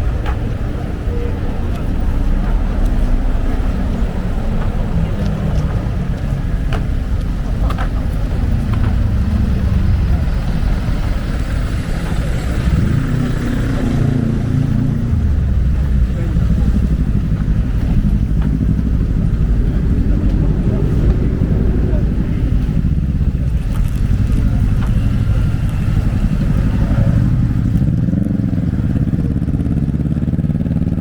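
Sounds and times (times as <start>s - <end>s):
crowd murmuring: 0.0s - 29.7s
road traffic rumble: 0.0s - 31.0s.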